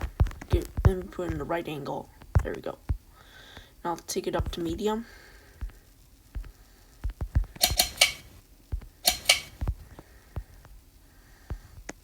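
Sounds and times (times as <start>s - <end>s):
fan pull chain clicking and rattling: 7.6s - 8.3s, 9.0s - 9.7s.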